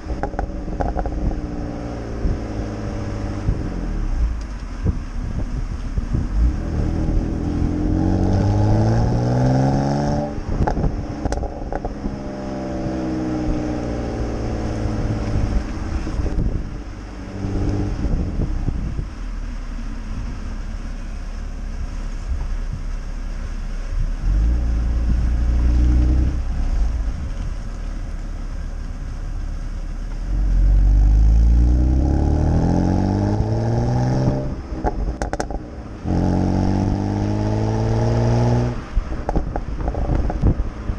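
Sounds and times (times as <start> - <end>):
exhaust pops: 0.0 - 1.6, 10.4 - 12.2, 34.3 - 36.2, 38.7 - 40.9
car engine revving: 0.0 - 22.5, 23.5 - 28.6, 29.3 - 40.9.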